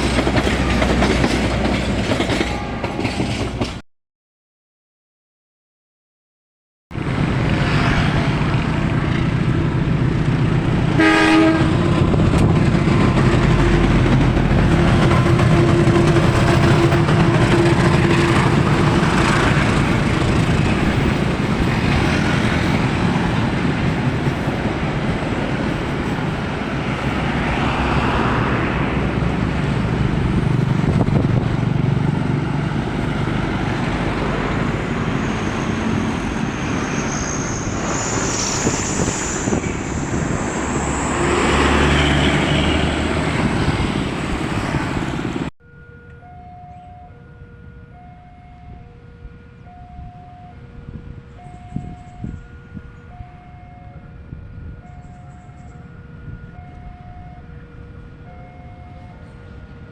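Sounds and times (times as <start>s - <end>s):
train horn blast: 2.4s - 3.2s, 10.9s - 12.1s, 14.6s - 19.2s
train engine drone: 7.0s - 59.9s.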